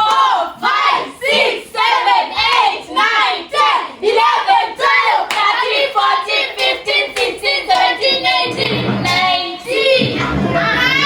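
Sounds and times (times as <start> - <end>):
hands clapping: 0.0 - 0.3, 6.6 - 9.3
group of voices chanting: 0.0 - 11.0.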